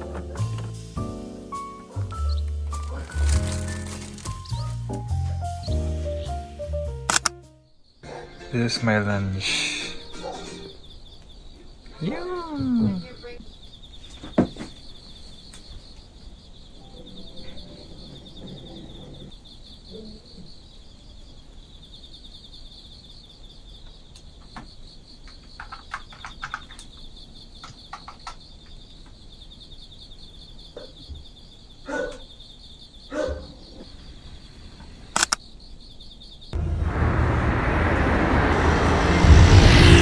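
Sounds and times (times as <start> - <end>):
insects trilling: 0.0 - 6.4, 7.2 - 36.6
small clicks: 7.1 - 7.4, 35.2 - 35.4.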